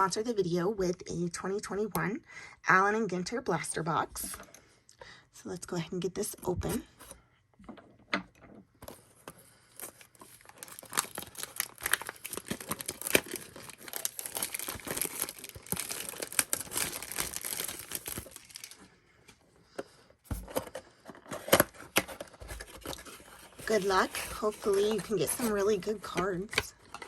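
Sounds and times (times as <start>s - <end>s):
plastic wrapping tearing and crinkling: 9.8s - 18.8s.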